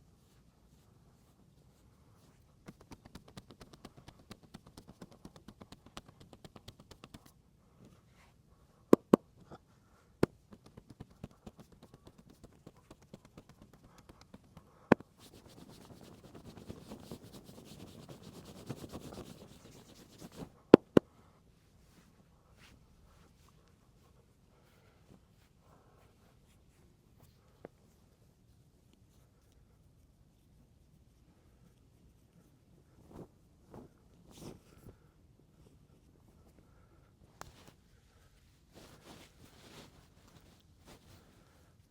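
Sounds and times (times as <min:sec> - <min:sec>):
hands rubbing on skin: 0:00.2 - 0:07.4, 0:10.2 - 0:21.1, 0:37.4 - 0:41.9
quick light taps on body: 0:02.6 - 0:07.4, 0:08.9 - 0:09.5, 0:10.2 - 0:16.0, 0:19.2 - 0:21.1.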